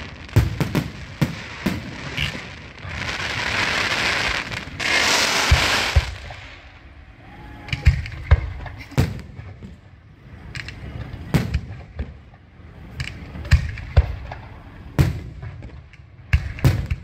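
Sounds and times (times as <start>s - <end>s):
firecracker bangs: 0.0s - 6.7s, 15.0s - 17.0s.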